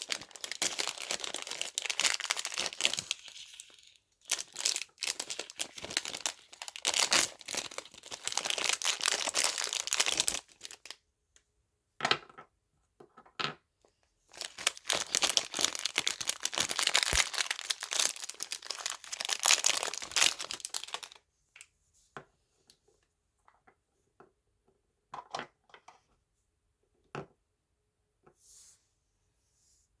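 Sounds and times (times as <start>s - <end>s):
packaging being torn and crinkled: 0.0s - 10.9s, 14.4s - 21.2s.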